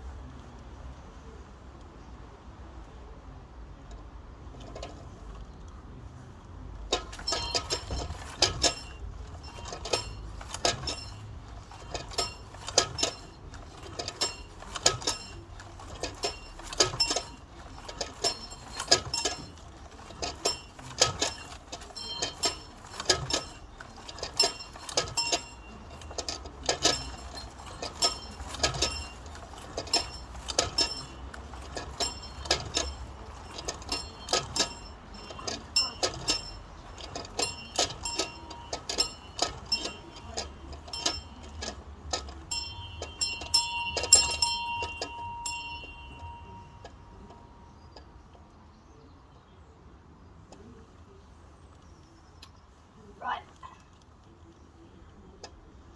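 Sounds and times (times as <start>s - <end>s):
bell clanging: 6.9s - 47.7s.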